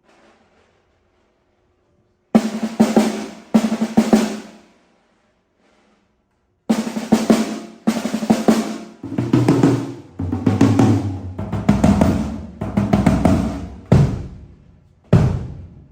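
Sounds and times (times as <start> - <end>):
snare drum rolls: 2.4 - 4.8, 6.7 - 15.9.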